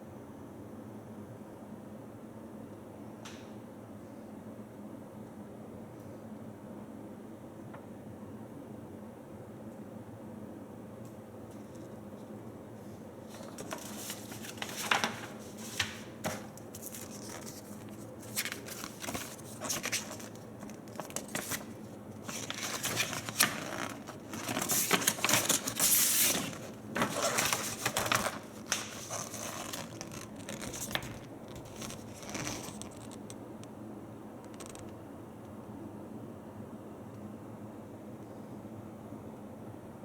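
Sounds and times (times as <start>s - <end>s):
packaging crinkling and tearing: 13.3s - 33.3s.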